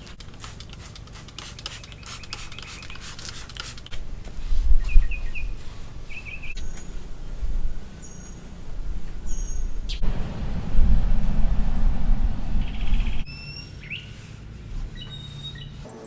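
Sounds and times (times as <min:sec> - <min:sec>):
short hissy bursts: 0:00.0 - 0:10.2
bird chirping: 0:01.7 - 0:03.6, 0:04.7 - 0:14.2, 0:14.9 - 0:15.8
low microphone rumble: 0:04.0 - 0:13.3.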